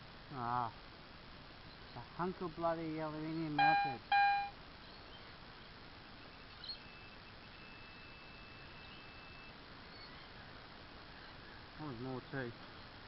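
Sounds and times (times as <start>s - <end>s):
outdoor background hiss: 0.0s - 13.0s
short high chirp: 3.6s - 4.5s.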